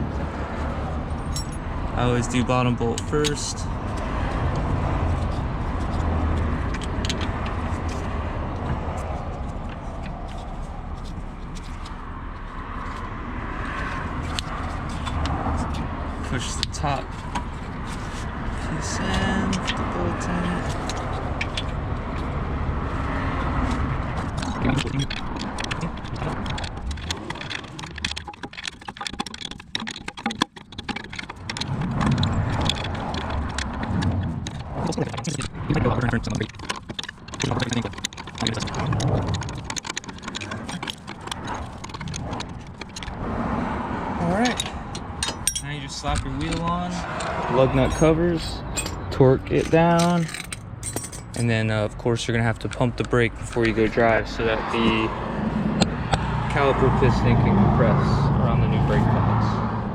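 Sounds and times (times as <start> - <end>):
low engine rumble: 0.0 - 28.9, 31.1 - 59.9
metal tools clicking and clinking: 1.1 - 3.6, 24.2 - 43.2, 44.4 - 54.2.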